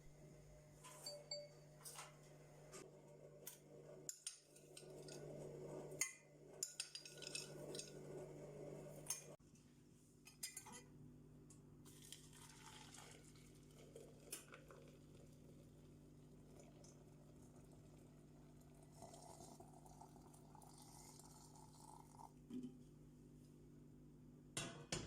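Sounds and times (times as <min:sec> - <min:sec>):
dishes and cutlery clinking: 0:06.0 - 0:08.0, 0:10.3 - 0:10.9.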